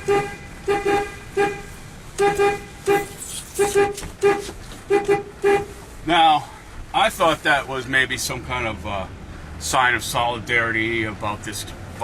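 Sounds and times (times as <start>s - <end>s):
truck horn beeping: 0.0s - 5.9s.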